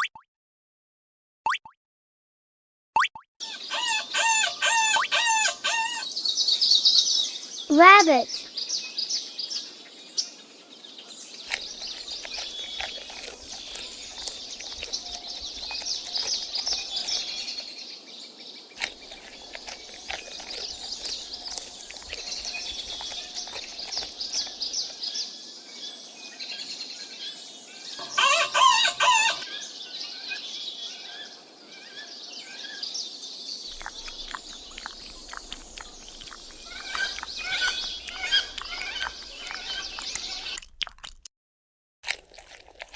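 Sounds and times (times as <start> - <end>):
loud bird call: 3.4 - 6.1, 28.0 - 29.6, 36.5 - 40.6
birds chirping and twittering: 3.4 - 40.6.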